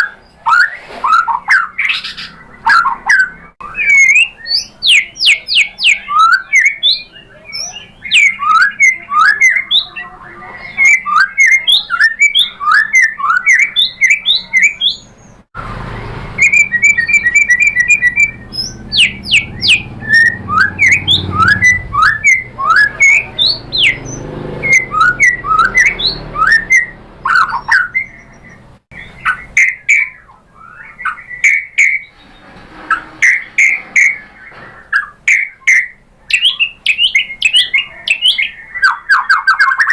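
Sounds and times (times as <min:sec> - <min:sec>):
songbird singing: 0:00.0 - 0:39.9
low rumble: 0:32.0 - 0:35.0.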